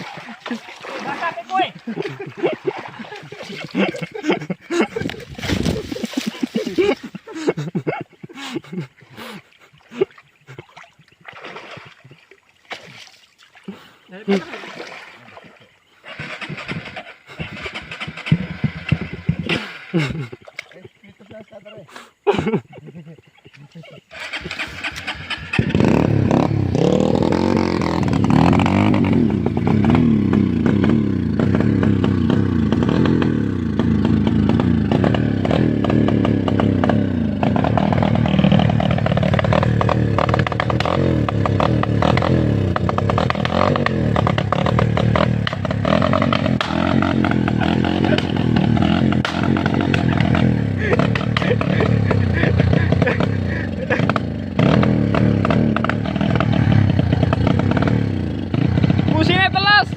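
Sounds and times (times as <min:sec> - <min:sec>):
diesel engine starting and revving: 0:16.0 - 0:20.2, 0:24.1 - 0:59.9.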